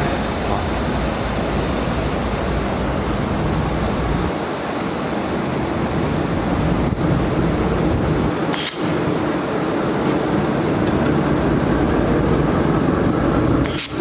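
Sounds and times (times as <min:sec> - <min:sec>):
machine with high-pitched whine: 0:00.0 - 0:14.0
sharp click: 0:08.5 - 0:09.2, 0:13.6 - 0:14.0.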